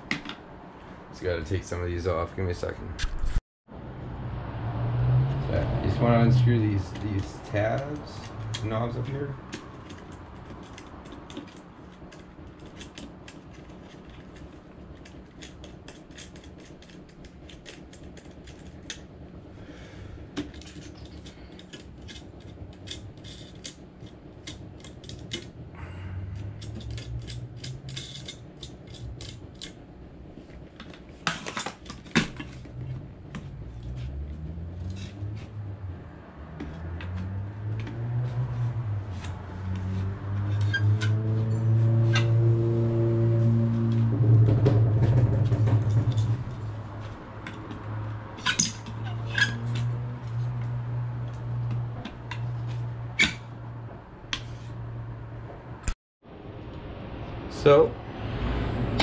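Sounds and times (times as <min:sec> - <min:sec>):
low droning tone: 0:32.4 - 0:53.0.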